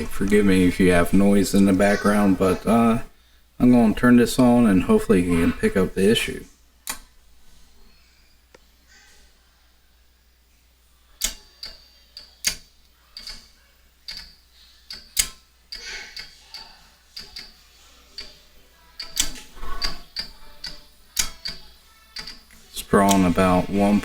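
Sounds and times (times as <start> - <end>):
test set clicking and popping: 11.2 - 17.6, 18.2 - 24.0.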